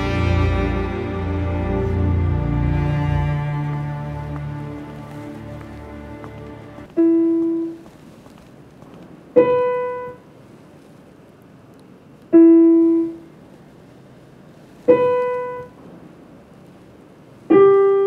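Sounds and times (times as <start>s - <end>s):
single piano notes: 14.9s - 15.8s.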